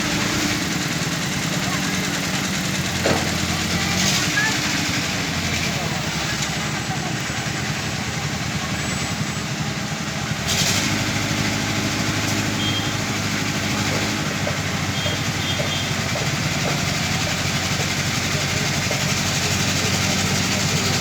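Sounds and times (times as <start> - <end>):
heavy diesel engines running: 0.0 - 21.0.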